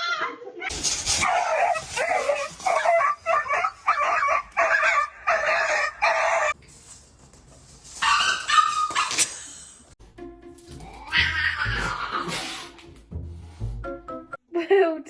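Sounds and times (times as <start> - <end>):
dog barking: 1.2 - 6.5, 8.0 - 9.2.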